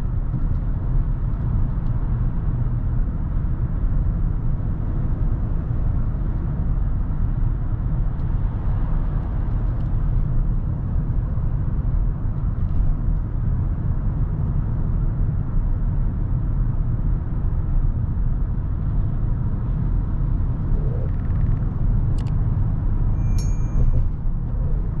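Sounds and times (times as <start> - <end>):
car engine and road noise: 0.0 - 25.0
short high tone: 23.2 - 24.1.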